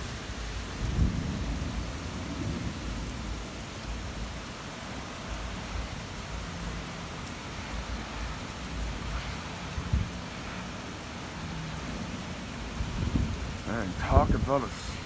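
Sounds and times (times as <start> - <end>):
low thunder rumble: 0.0 - 4.4, 11.9 - 15.0
steady rain hiss: 0.0 - 15.0.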